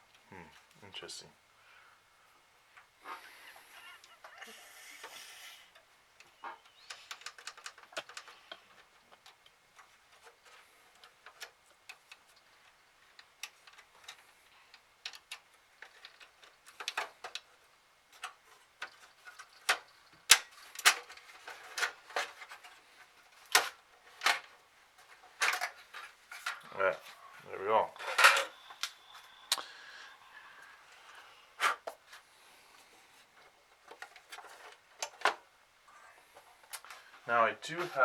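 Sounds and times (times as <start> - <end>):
plastic and metal parts clicking: 6.2 - 26.7, 28.0 - 29.0.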